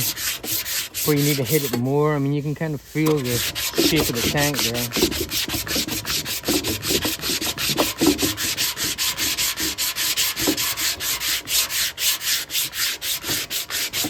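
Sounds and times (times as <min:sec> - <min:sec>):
sanding block rasping: 0:00.0 - 0:14.0.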